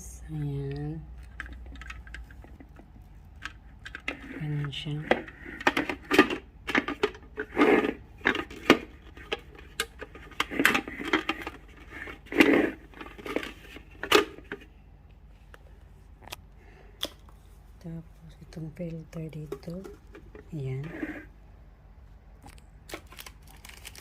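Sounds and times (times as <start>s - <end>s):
plastic parts clicking and knocking: 0.7s - 14.7s, 18.9s - 20.9s.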